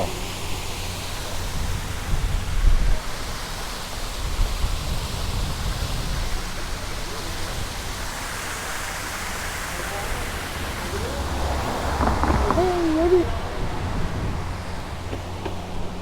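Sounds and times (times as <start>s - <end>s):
small waterfall splashing: 0.0s - 16.0s
low rumbling: 9.0s - 16.0s.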